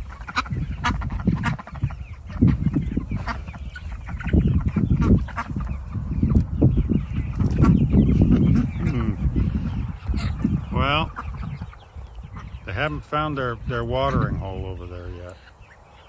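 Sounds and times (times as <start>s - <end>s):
chickens clucking: 0.0s - 16.0s.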